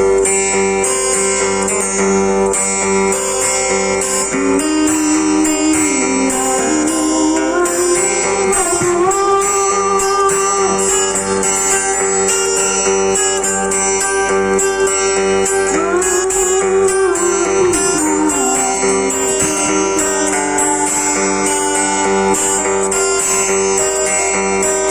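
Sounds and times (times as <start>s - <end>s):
guitar strumming: 0.0s - 24.9s
gliding held melody note: 4.3s - 24.9s.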